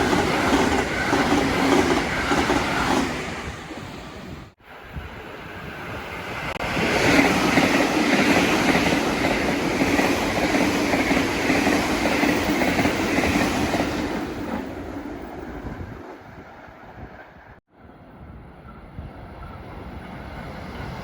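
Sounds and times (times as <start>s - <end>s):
train wheels clattering on rails: 0.0s - 3.2s, 6.5s - 15.3s.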